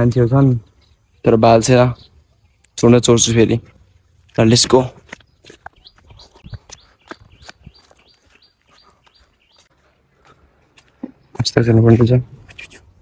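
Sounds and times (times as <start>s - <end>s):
small bird chirping: 0.2s - 9.8s.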